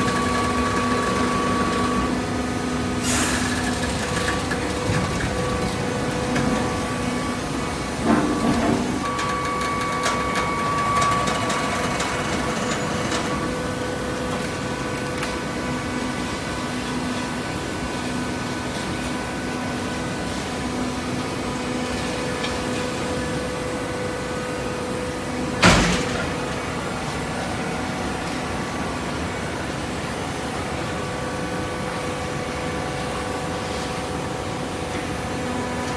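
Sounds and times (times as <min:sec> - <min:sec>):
metal clank: 0:25.6 - 0:26.7.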